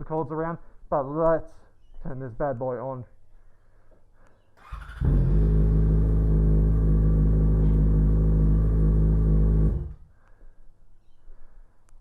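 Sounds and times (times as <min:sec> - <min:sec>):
motorcycle engine idling: 0:04.6 - 0:10.0.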